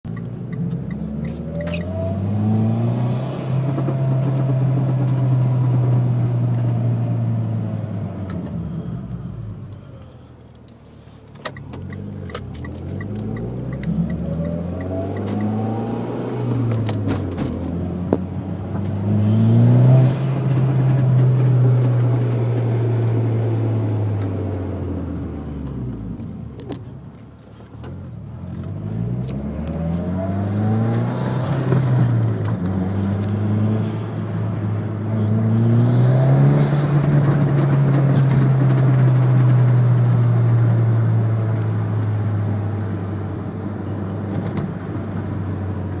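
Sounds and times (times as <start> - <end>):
car engine revving: 0.2 - 9.9, 11.6 - 26.6, 28.2 - 46.0
metallic rattle: 11.4 - 25.3.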